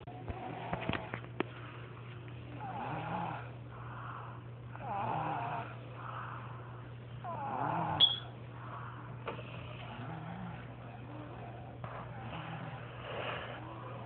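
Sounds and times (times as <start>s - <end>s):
faint breaths: 0.0s - 14.0s
steady low hum: 0.0s - 14.0s
person snoring: 2.6s - 8.0s, 8.7s - 14.0s.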